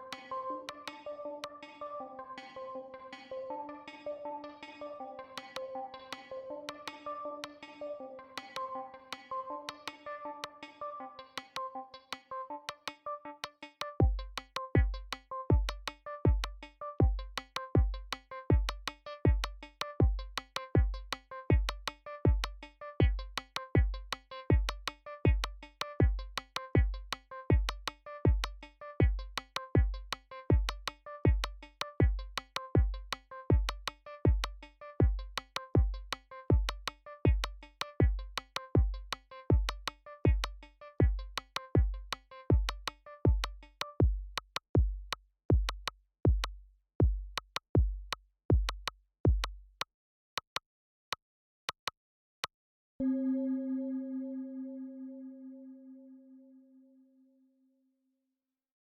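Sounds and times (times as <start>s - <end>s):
repeating synthesizer notes: 0.0s - 43.7s
kick drum: 14.0s - 49.8s.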